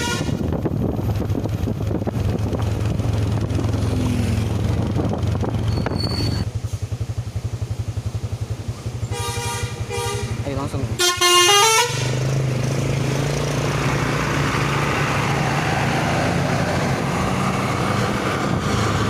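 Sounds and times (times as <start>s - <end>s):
vehicle engine idling: 0.4s - 12.7s.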